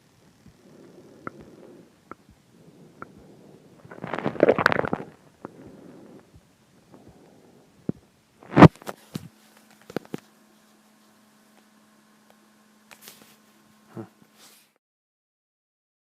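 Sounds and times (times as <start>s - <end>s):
low steady hum: 0.0s - 14.7s
throat clicking: 0.4s - 3.3s.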